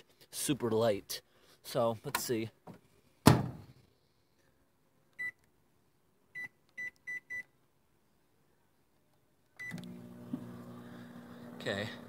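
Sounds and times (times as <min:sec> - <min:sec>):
microwave keypad beeps: 0:05.2 - 0:05.4, 0:06.4 - 0:07.5, 0:09.6 - 0:09.9.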